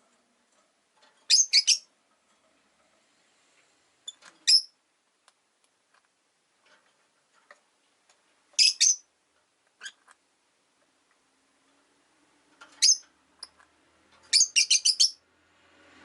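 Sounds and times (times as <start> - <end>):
lovebirds chirping: 1.2 - 2.0, 4.1 - 4.8, 8.6 - 9.1, 12.7 - 13.6, 14.3 - 15.2.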